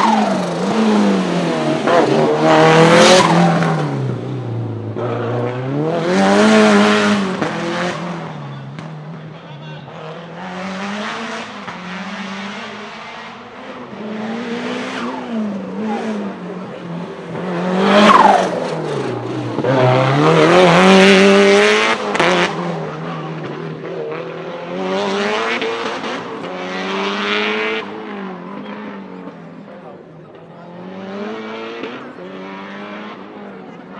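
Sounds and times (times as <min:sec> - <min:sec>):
racing car engine revving: 0:00.0 - 0:33.9.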